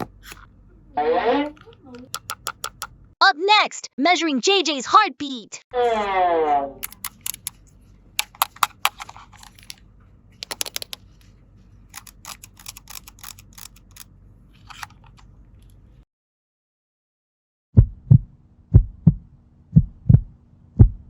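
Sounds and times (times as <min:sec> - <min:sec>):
plastic toy pieces clicking: 0:01.6 - 0:02.9, 0:06.8 - 0:07.6, 0:08.2 - 0:09.8, 0:10.4 - 0:11.0, 0:12.0 - 0:14.0.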